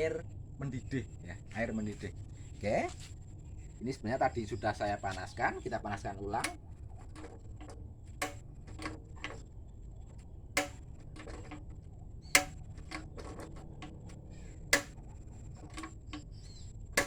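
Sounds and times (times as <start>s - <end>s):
low steady hum: 0.0s - 17.0s
pot ticking and clicking: 5.3s - 17.0s.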